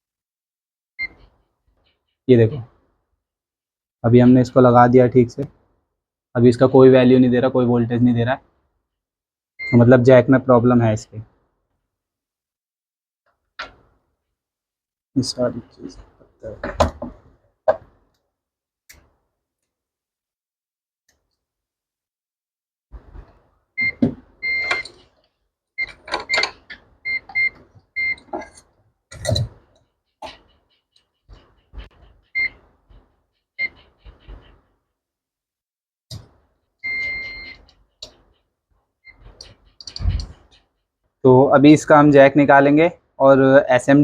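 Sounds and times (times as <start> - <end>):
clicks and knocks of handling: 25.8 - 27.4
short electronic beeps: 36.8 - 37.7.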